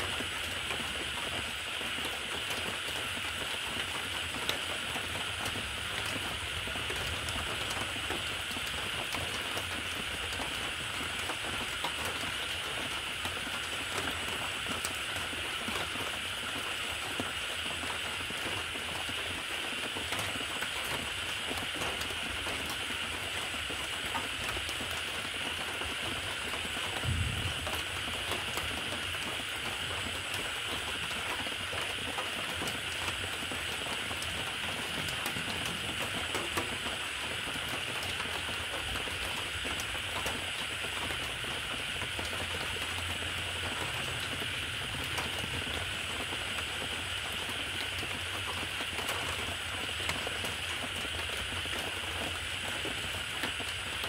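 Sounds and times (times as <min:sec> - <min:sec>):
steady rain: 0:00.0 - 0:54.0
low thump: 0:27.0 - 0:28.0.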